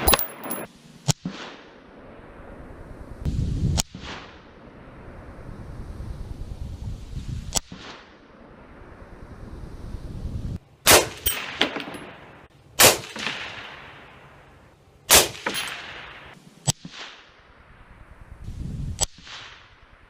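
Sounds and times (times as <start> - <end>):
rifle shots echoing: 0.0 - 0.7, 10.8 - 14.4, 15.1 - 16.4.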